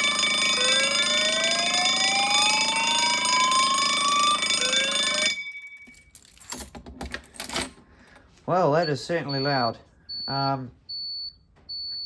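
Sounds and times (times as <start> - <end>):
alarm bell ringing: 0.0 - 6.6.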